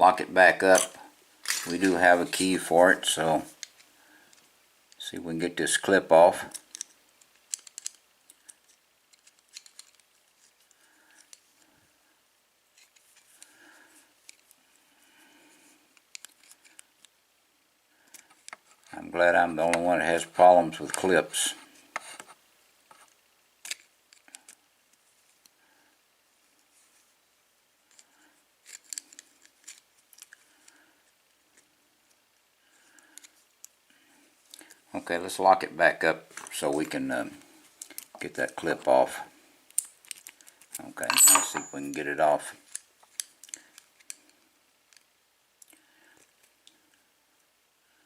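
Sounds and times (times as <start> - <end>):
metal tool clicking and scraping: 0.7 - 1.9, 41.0 - 42.0.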